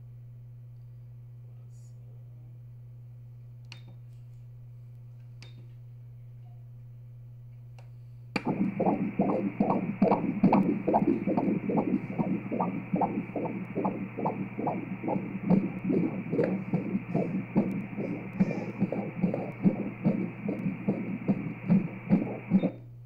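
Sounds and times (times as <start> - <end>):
fetal heartbeat whooshing pulses: 8.4 - 22.8.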